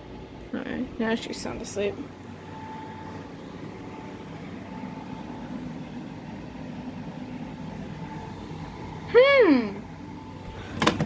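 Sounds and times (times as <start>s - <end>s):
low background hum: 0.0s - 11.0s.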